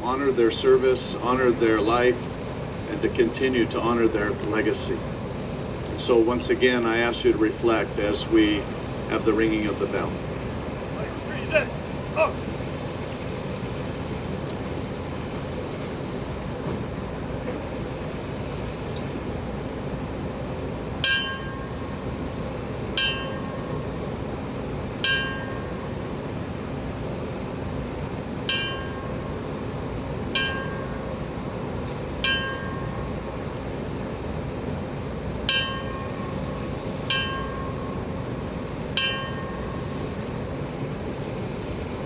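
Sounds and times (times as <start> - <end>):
fire bell strikes: 21.0 - 24.4, 25.0 - 26.2, 28.4 - 29.6, 30.3 - 33.7, 35.4 - 40.4.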